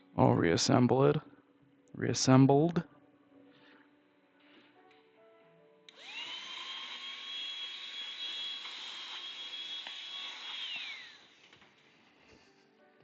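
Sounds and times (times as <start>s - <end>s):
small electric motor whining: 5.9s - 11.9s.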